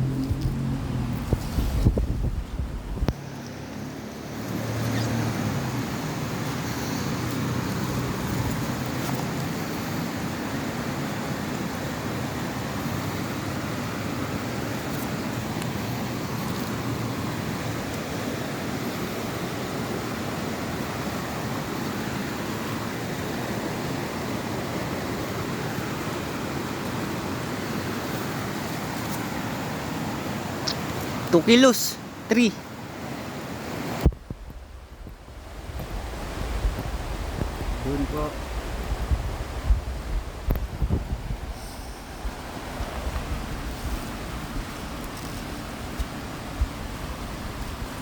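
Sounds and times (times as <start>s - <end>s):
low motor rumble: 0.0s - 3.1s
rushing wind: 0.0s - 48.0s
water noise: 0.0s - 48.0s.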